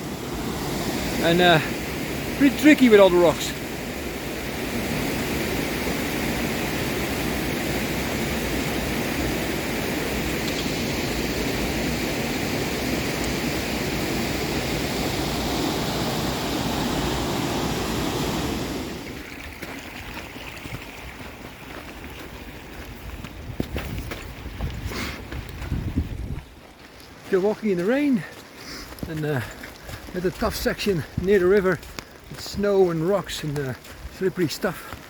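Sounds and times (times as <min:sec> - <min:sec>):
river rushing: 0:00.0 - 0:23.5.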